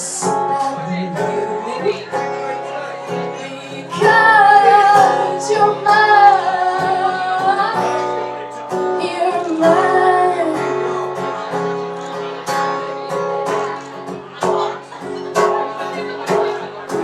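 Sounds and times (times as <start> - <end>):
woman singing: 0.0 - 2.2, 3.3 - 11.1
acoustic guitar: 0.0 - 17.0.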